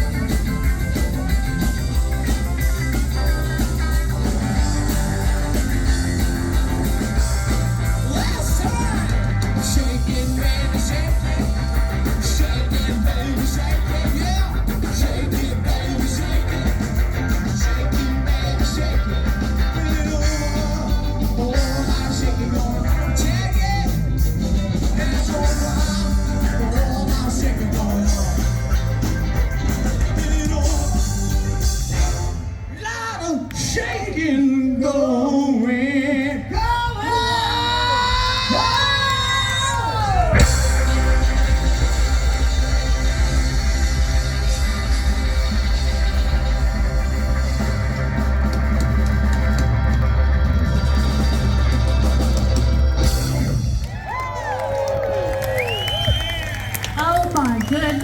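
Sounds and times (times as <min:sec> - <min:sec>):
steady drum beat: 0:00.0 - 0:32.5, 0:39.9 - 0:53.9
guitar: 0:00.0 - 0:58.0
live rock band: 0:00.0 - 0:58.0.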